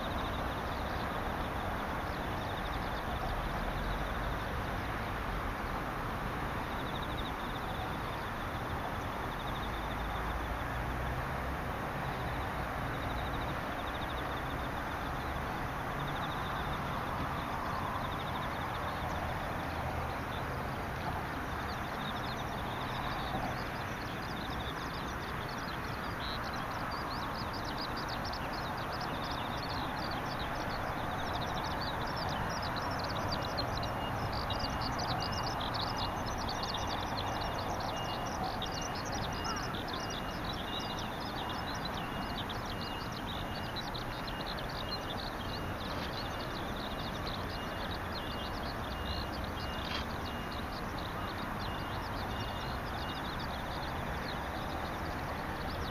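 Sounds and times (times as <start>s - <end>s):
steady background noise: 0.0s - 55.9s
pulsing insect trill: 13.0s - 55.9s.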